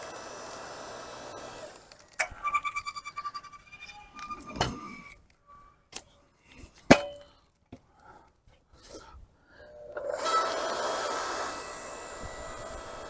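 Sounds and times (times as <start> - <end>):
metallic ring: 2.2 - 5.8.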